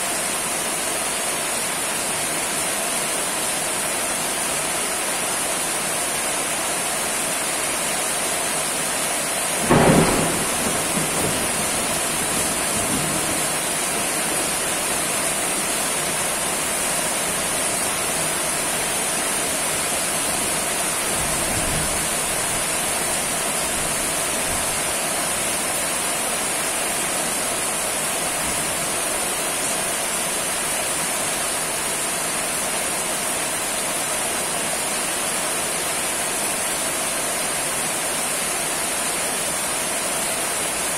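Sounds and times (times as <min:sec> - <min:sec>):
heavy rain: 0:00.0 - 0:40.9
thunder crack and rumble: 0:09.6 - 0:14.7.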